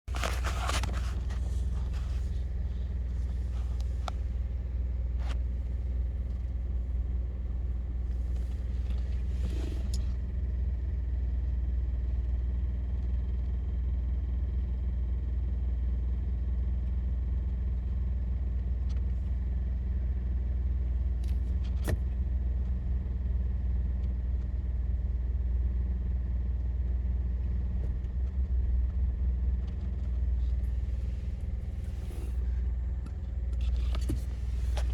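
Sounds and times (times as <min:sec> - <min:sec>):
car engine idling with rattle: 0:00.0 - 0:34.9.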